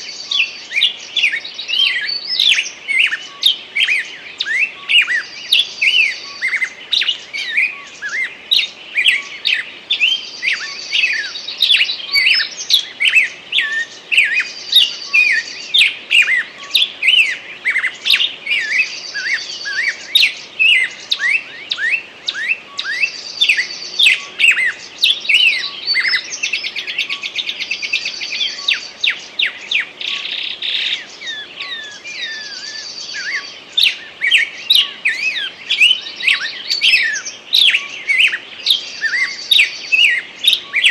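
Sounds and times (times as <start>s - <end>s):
songbirds chirping and whistling: 0.0s - 40.9s.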